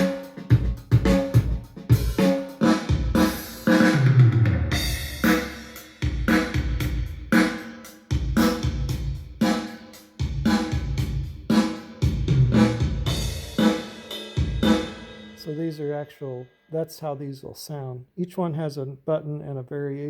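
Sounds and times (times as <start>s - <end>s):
electronic drum kit groove: 0.0s - 16.0s.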